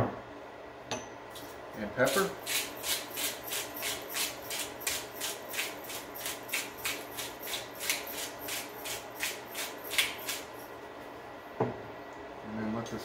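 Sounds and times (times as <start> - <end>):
pepper mill grinding: 1.3 - 10.8.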